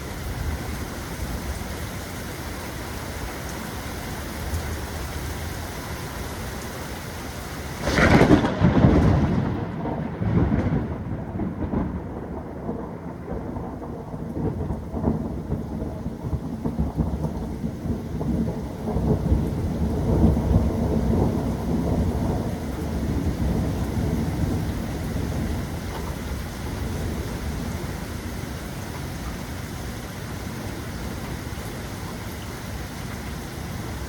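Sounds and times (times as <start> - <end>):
steady rain: 0.0 - 34.0
thunder clap and rumbles: 7.8 - 28.4.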